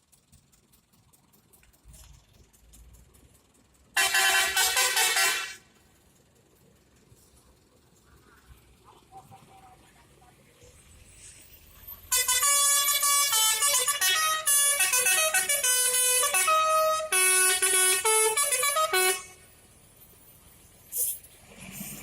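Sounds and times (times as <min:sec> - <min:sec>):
air horns playing a tune: 0:04.0 - 0:05.6, 0:12.1 - 0:19.4.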